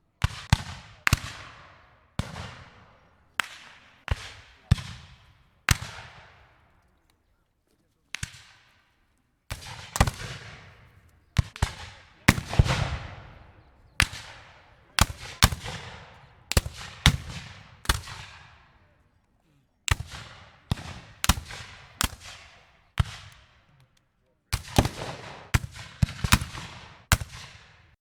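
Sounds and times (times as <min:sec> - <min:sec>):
loud echoing shot-like bangs: 0:00.2 - 0:06.6, 0:09.5 - 0:18.7, 0:19.9 - 0:23.6, 0:24.6 - 0:27.7.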